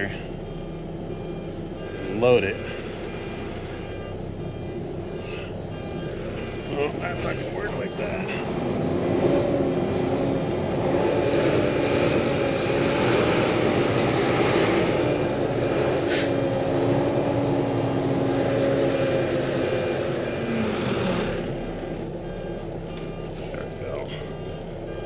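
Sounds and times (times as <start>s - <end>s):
heavy diesel engine running: 0.0s - 25.0s.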